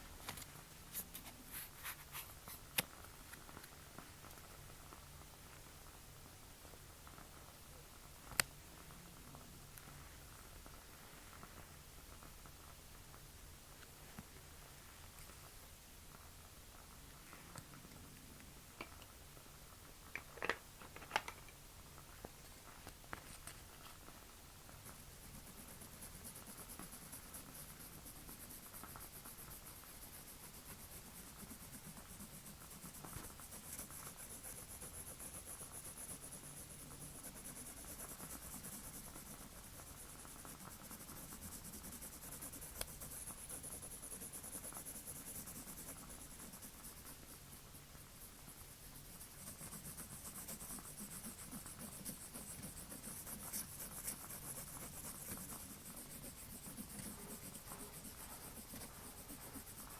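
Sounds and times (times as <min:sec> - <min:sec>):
pencil scratching on paper: 0:24.7 - 0:59.9.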